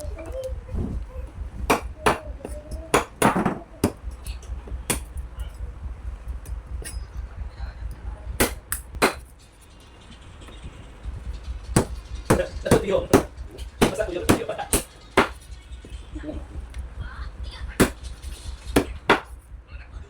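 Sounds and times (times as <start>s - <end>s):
heavy blade chopping wood: 8.4s - 9.2s, 11.8s - 15.4s, 18.8s - 19.3s.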